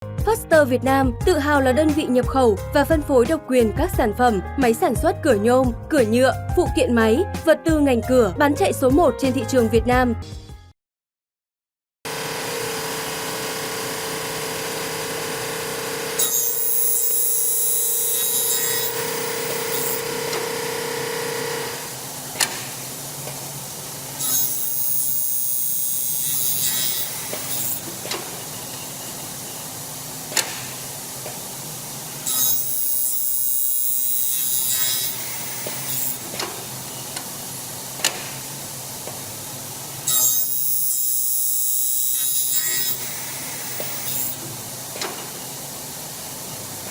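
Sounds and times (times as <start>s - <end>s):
saw cutting aluminium: 12.1s - 28.6s, 32.2s - 36.8s, 40.0s - 44.6s
saw motor running: 12.1s - 29.5s, 32.1s - 36.9s, 40.0s - 44.5s.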